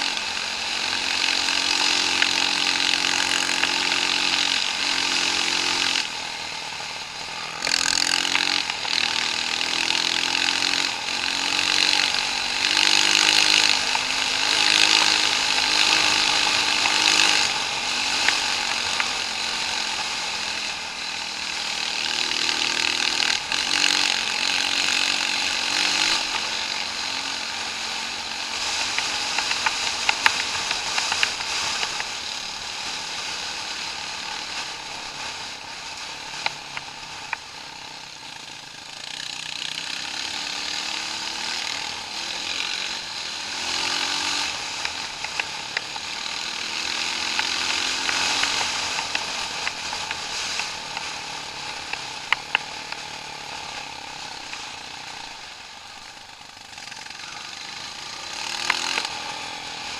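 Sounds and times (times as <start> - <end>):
loud steady rushing noise: 0.0 - 59.9
off-road vehicle engine revving: 0.0 - 59.9.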